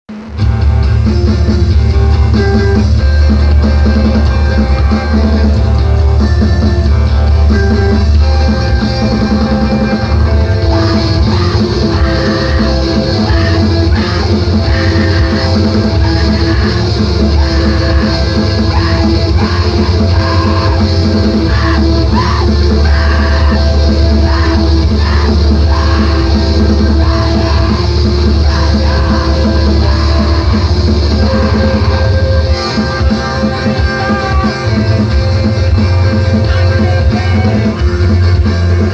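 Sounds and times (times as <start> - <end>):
loud distorted band playing: 0.0 - 38.9
screamed vocals: 10.6 - 34.7.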